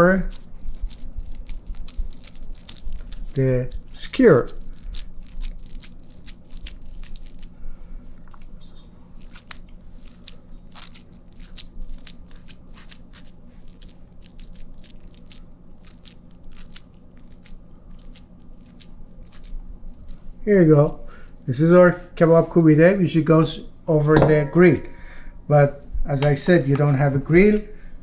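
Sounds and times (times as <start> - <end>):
wet hands squeezing minced meat: 0.0 - 21.5
low hum: 23.7 - 28.0.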